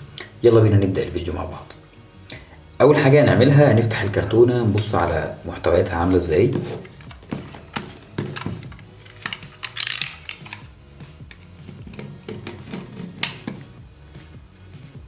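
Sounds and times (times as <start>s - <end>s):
scraping rustle: 5.9s - 10.7s.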